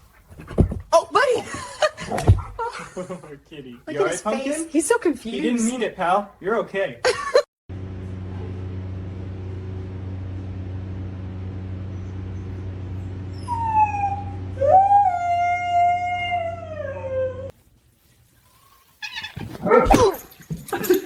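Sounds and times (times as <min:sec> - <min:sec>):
steady low hum: 0:07.7 - 0:15.2
dog howling: 0:13.4 - 0:17.5
dog whining: 0:13.4 - 0:17.5, 0:19.2 - 0:20.2.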